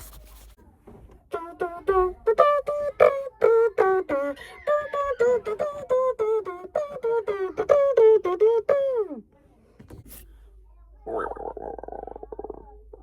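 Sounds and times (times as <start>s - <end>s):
person making vocal sound effect: 11.1s - 13.0s.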